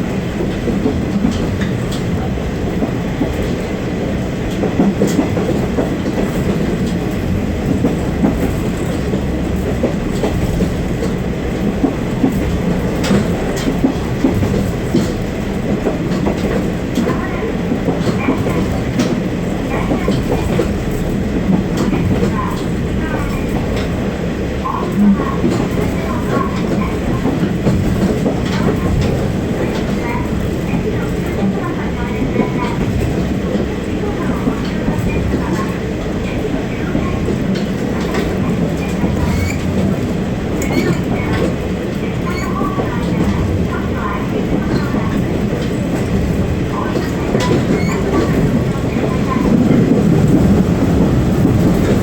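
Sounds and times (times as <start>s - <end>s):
train wheels on track: 0.0s - 52.0s
wheels clicking over rail joints: 4.5s - 52.0s.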